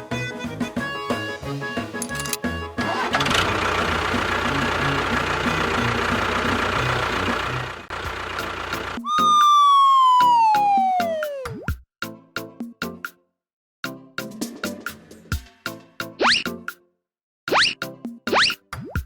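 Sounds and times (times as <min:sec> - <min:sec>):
tone gliding down in pitch: 0:09.0 - 0:11.6.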